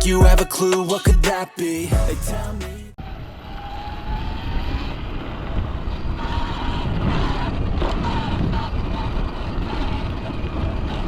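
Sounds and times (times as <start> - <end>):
wind buffeting microphone: 4.3 - 11.0.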